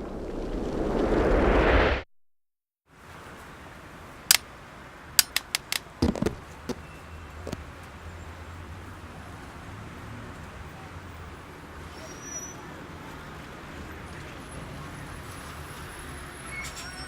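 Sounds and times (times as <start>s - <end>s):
sharp clicks: 5.2s - 6.2s.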